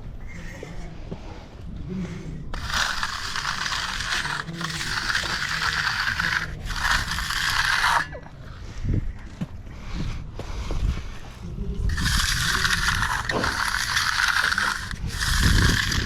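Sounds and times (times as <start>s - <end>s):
hand tool scraping concrete: 2.4s - 9.0s, 11.9s - 16.0s.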